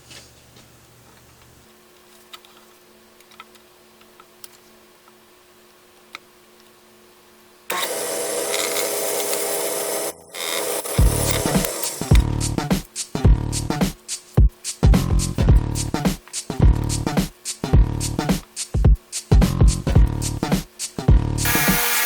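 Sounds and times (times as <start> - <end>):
power tool working wood: 7.7 - 12.2, 21.4 - 22.0
music with heavy beat: 11.0 - 22.0.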